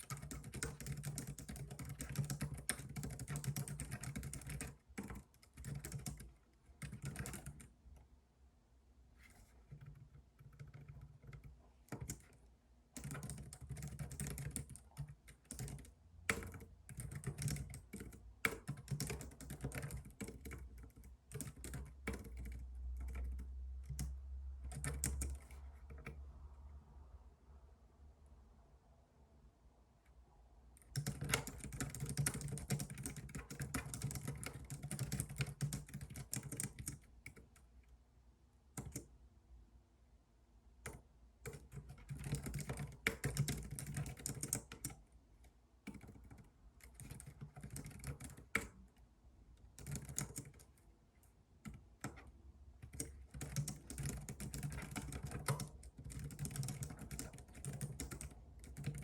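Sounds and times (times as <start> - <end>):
keyboard typing clicks: 0.0 - 7.7, 9.7 - 12.4, 13.0 - 26.2, 30.8 - 37.6, 38.8 - 39.1, 40.8 - 45.0, 45.8 - 48.9, 49.7 - 50.8, 51.6 - 59.0.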